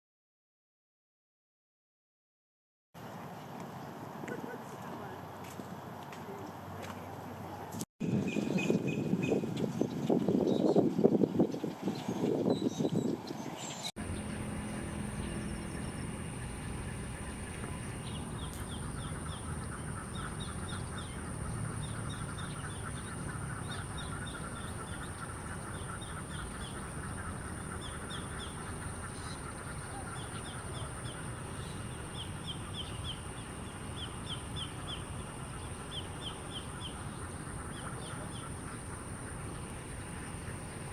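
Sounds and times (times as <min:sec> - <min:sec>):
birds chattering: 0:13.8 - 0:40.9
steady high-pitched tone: 0:14.0 - 0:26.9.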